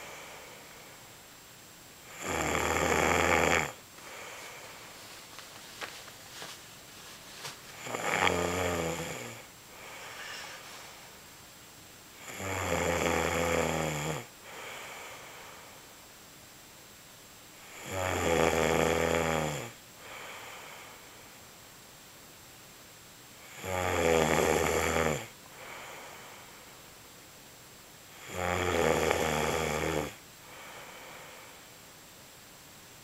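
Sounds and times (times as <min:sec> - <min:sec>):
soft breath: 0:00.0 - 0:01.2, 0:04.0 - 0:07.9, 0:09.3 - 0:11.3, 0:14.4 - 0:16.0, 0:20.0 - 0:21.5, 0:25.5 - 0:27.0, 0:30.4 - 0:31.9
man snoring: 0:02.1 - 0:04.7, 0:07.8 - 0:10.6, 0:12.2 - 0:15.3, 0:17.6 - 0:20.7, 0:23.4 - 0:26.2, 0:28.1 - 0:31.4.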